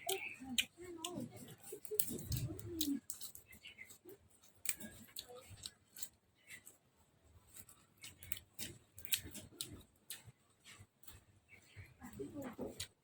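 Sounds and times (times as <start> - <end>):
chewing and eating smacks: 0.0 - 6.8, 7.4 - 13.0.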